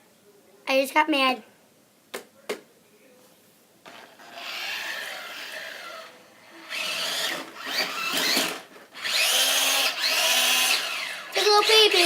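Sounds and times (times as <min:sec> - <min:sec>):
toy car electric motor whirring: 0:03.9 - 0:12.0.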